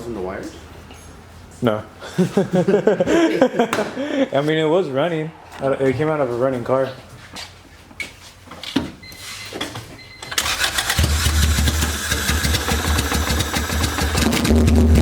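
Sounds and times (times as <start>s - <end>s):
engine cranked by starter: 10.3s - 15.0s
engine rough idle: 10.6s - 15.0s.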